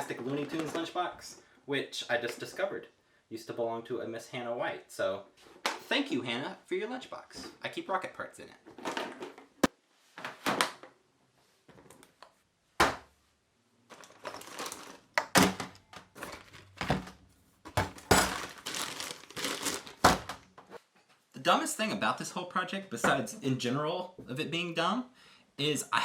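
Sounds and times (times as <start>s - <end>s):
packaging rustling and crinkling: 13.9s - 20.5s.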